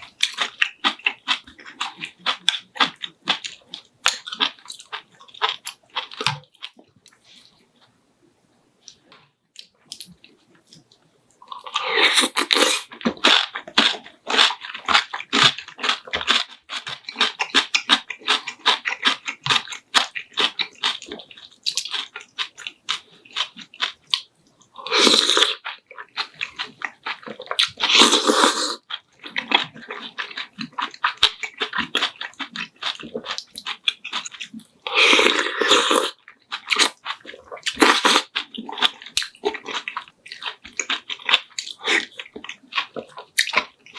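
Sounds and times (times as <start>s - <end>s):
wet chewing and crunching: 0.0s - 7.9s, 8.9s - 43.9s.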